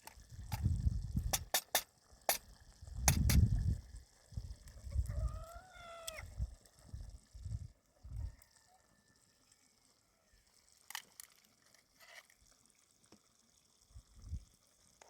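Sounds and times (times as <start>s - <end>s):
farm animal call: 5.0s - 6.2s.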